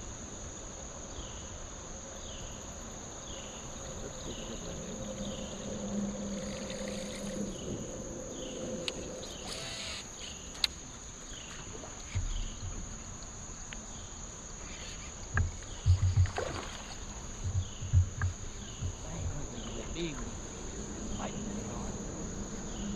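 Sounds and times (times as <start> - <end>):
insects droning: 0.0 - 22.9
faint chirp: 3.2 - 10.7
knocks on kayak hull: 15.3 - 19.3.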